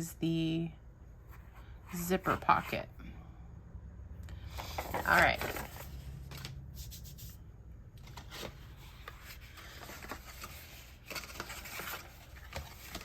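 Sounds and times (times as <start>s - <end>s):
paper and packaging rustling: 4.5s - 7.2s, 8.0s - 13.0s.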